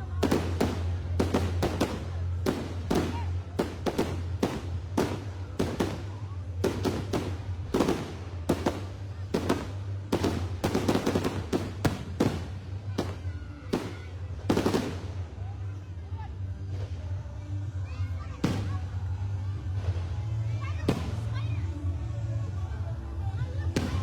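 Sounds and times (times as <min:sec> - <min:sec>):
fireworks booming with echo: 0:00.0 - 0:15.4, 0:18.4 - 0:19.0, 0:23.8 - 0:24.0.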